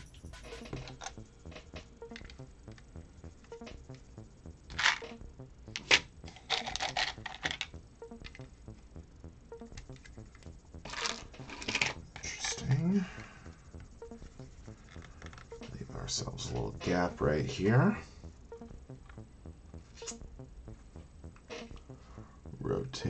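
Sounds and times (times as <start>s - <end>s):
plastic bricks clicking and rattling: 5.8s - 7.7s.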